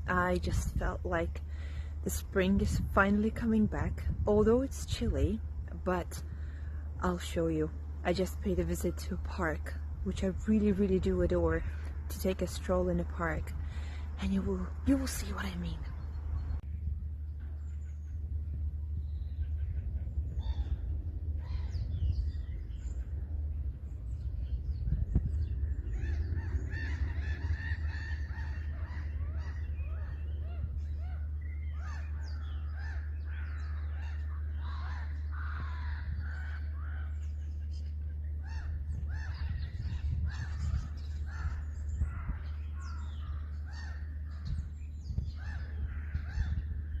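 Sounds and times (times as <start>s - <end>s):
steady low rumble: 0.0s - 47.0s
crows cawing: 31.7s - 37.3s.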